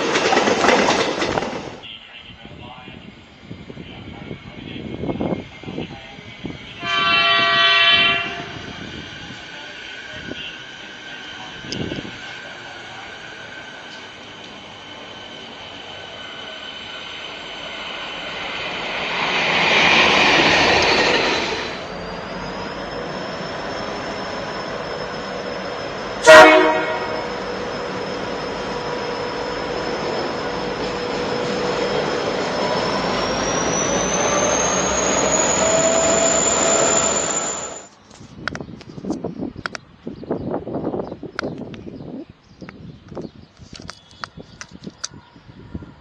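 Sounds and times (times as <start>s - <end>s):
train wheels rushing on rails: 0.0s - 2.0s, 3.9s - 38.6s
thin rising whine: 13.5s - 26.3s, 27.0s - 37.9s.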